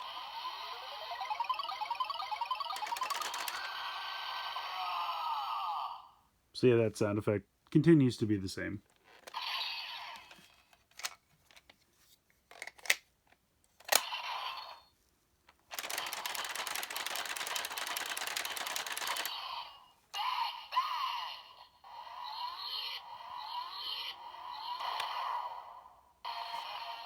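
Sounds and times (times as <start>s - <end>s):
electronic sweeping chirping tones: 0.8s - 3.2s
plastic clicks of toy blaster: 2.8s - 3.7s, 10.1s - 11.7s, 12.5s - 13.1s, 13.8s - 14.2s, 15.7s - 19.4s.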